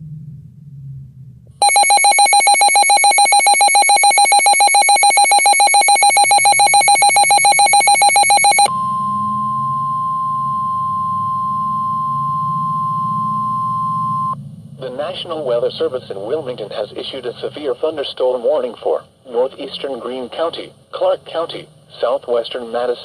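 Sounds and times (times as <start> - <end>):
rapidly pulsing alert tone: 1.6 - 8.7
steady alarm tone: 1.6 - 14.4.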